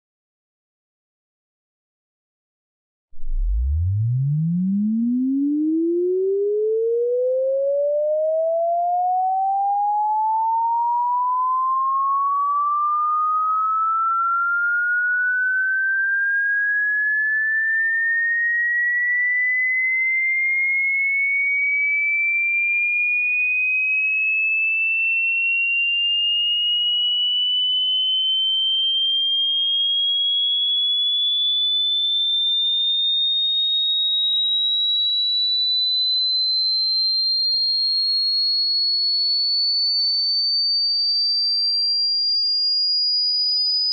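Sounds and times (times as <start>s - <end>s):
rising sine tone sweep: 3.2s - 17.9s.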